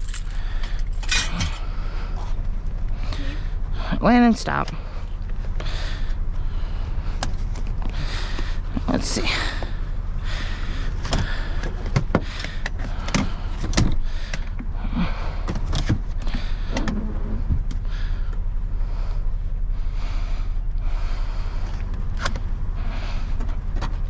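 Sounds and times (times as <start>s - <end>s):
steady low rumble: 0.0s - 24.0s
scrap metal clanking: 1.0s - 1.7s.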